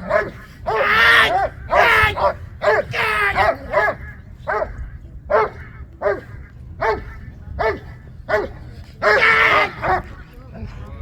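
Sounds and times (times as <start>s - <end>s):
dog barking: 0.0s - 10.1s.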